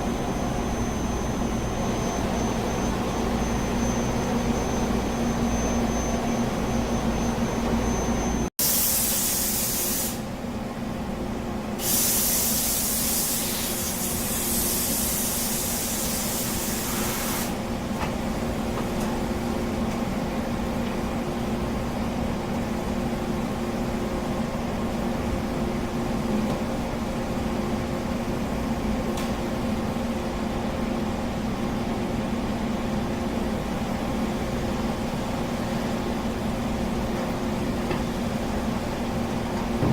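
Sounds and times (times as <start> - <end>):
machine mechanical hum: 0.0 - 8.5, 9.8 - 39.9
loud hissing spray: 8.6 - 10.2, 11.8 - 17.6.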